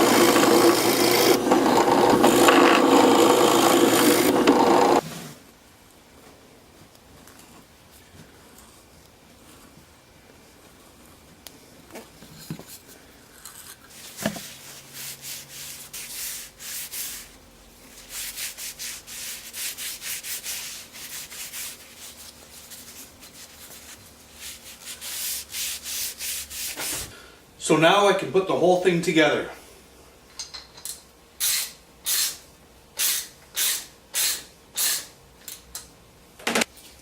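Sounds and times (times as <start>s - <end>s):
sandpaper strokes on wood: 13.9s - 27.1s.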